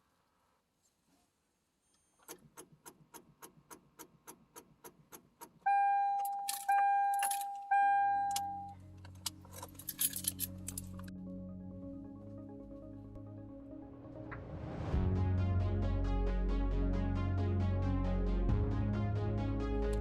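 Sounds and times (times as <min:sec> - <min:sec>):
low steady hum: 0:05.7 - 0:14.0.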